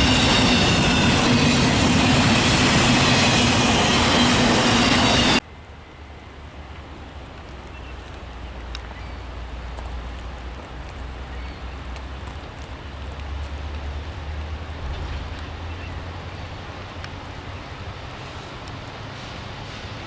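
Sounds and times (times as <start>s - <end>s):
wheels hissing on rail: 0.0s - 5.4s, 17.8s - 20.0s
train rumble: 0.0s - 20.0s.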